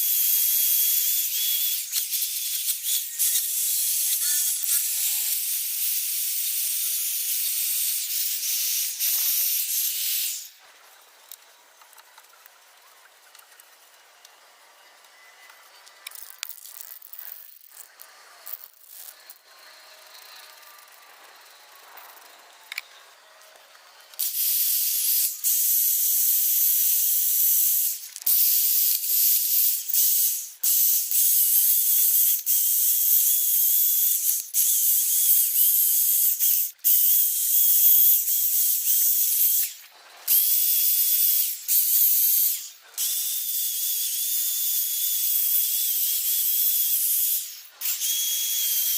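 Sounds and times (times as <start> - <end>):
spray paint can hissing: 0.0 - 10.6, 16.1 - 19.2, 24.2 - 48.9.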